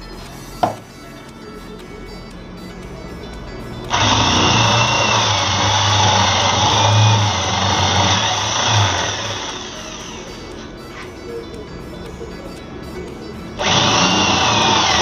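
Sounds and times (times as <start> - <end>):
electric power tool running: 3.9 - 10.7, 13.6 - 15.0.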